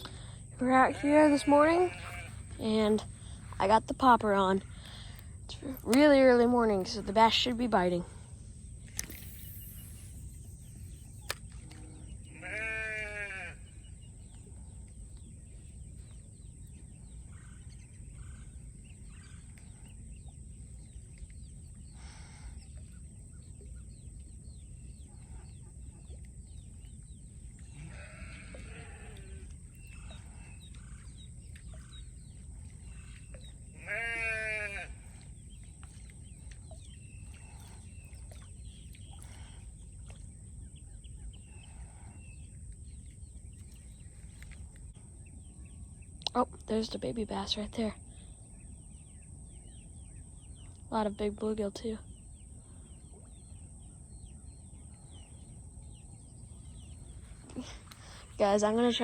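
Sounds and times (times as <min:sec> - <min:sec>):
farm animal calling: 0:00.0 - 0:04.6, 0:11.8 - 0:14.0, 0:27.6 - 0:31.3, 0:32.9 - 0:35.3
quiet outdoor background: 0:00.0 - 0:59.0.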